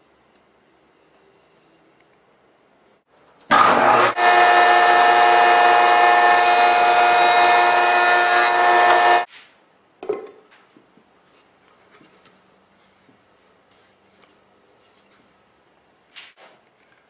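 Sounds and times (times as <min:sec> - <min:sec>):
woodworking power tool running: 0:03.5 - 0:09.3.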